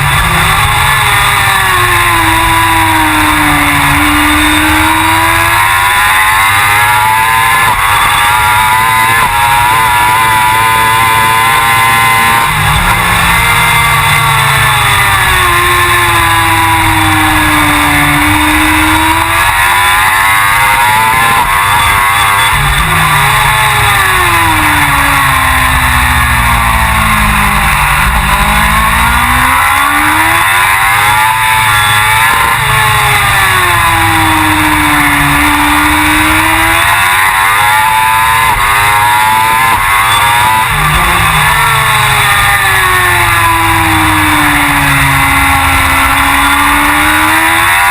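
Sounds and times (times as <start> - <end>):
constant rushing noise: 0.0 - 47.9
motorcycle engine revving: 0.0 - 47.9.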